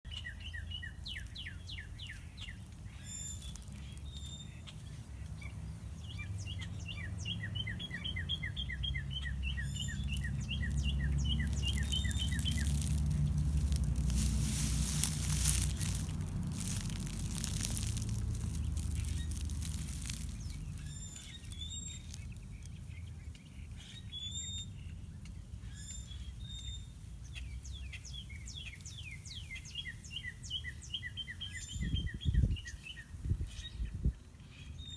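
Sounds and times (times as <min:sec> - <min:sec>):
small birds chirping: 0:00.1 - 0:34.9
low rumble: 0:09.8 - 0:22.2.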